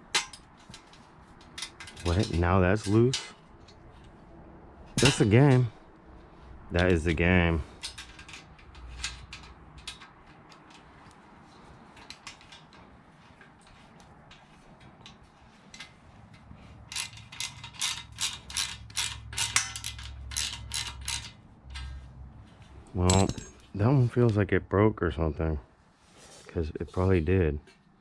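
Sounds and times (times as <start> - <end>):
ratchet clicking: 16.9 - 22.0.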